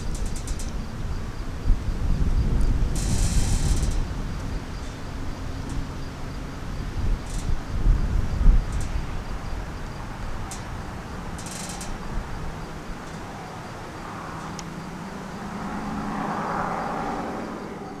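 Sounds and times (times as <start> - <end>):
outdoor background noise: 0.0 - 18.0
vehicle passing: 9.0 - 18.0.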